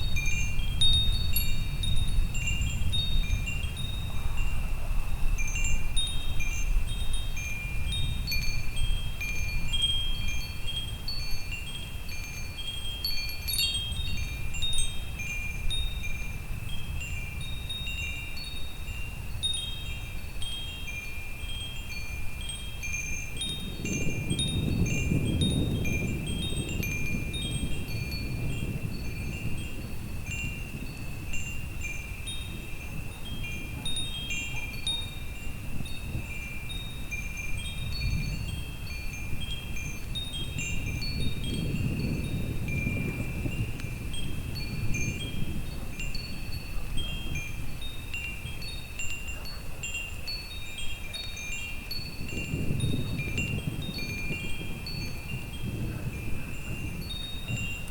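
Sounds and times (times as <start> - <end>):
metal wind chimes ringing: 0.0 - 57.9.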